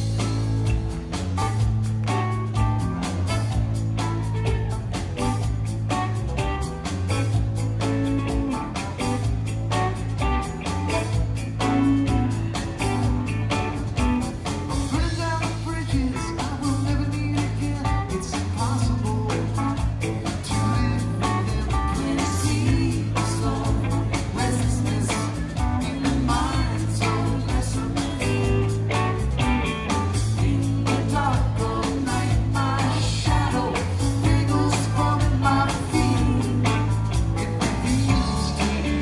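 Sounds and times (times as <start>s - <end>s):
electric guitar: 0.0s - 39.0s
steady drum beat: 0.0s - 39.0s
person singing: 13.0s - 39.0s.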